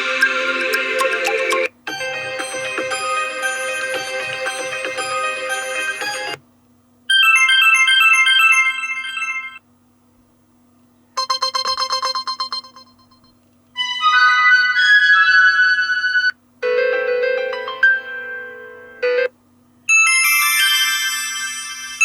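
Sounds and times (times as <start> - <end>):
electronic chime melodies: 0.0 - 6.4, 11.2 - 13.3
phone ringtone melody: 0.0 - 6.4, 7.1 - 9.6, 11.2 - 14.1, 16.6 - 19.3, 19.9 - 22.0.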